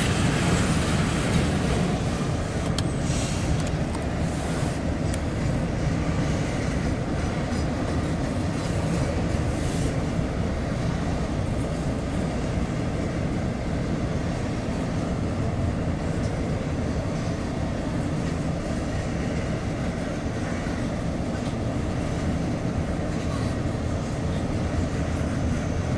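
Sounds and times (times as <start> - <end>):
train wheels rumbling on rails: 0.0 - 25.9.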